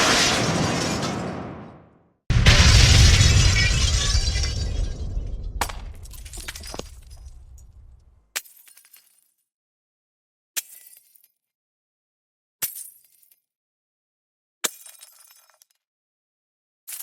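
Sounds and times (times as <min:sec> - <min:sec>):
debris and glass shattering: 0:00.0 - 0:01.5, 0:02.3 - 0:08.0
explosive demolition blast: 0:00.0 - 0:08.0
sharp cracks: 0:00.0 - 0:08.0
tinkle of debris: 0:03.4 - 0:07.9.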